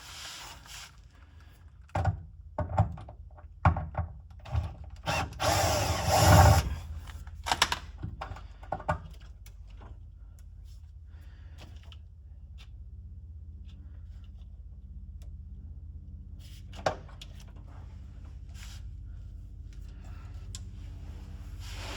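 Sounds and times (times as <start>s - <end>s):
power tool whirring: 5.1s - 6.9s.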